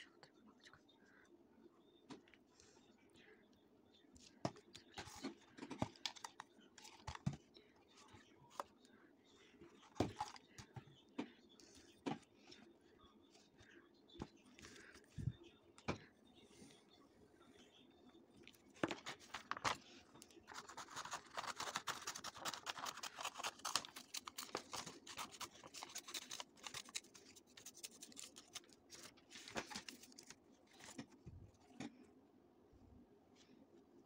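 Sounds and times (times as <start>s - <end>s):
scratching and rustling handling: 9.6s - 11.0s, 18.7s - 31.9s.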